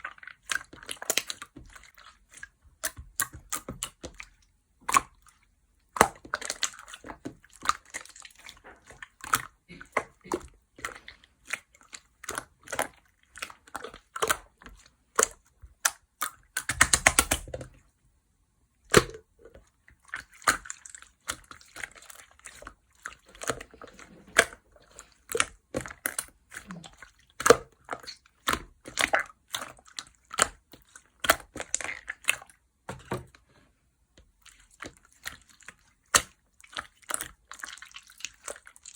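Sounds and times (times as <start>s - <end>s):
slime squelching: 0.0s - 18.0s, 18.8s - 38.9s
slime sticky clicks and pops: 16.6s - 17.5s.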